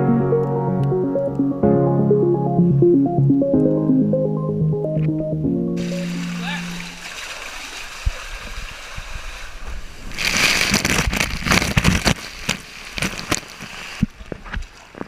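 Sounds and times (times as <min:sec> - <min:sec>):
water rushing and splashing: 0:05.8 - 0:14.9.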